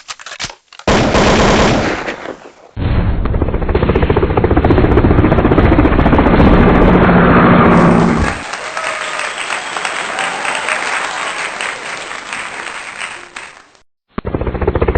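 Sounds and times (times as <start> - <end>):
helicopter rotor chopping: 3.4 - 8.6.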